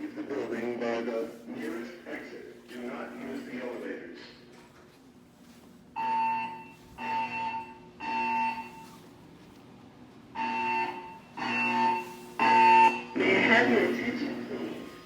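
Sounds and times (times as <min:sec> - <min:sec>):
fire alarm evacuation beeps: 0:05.9 - 0:09.3, 0:10.3 - 0:15.0.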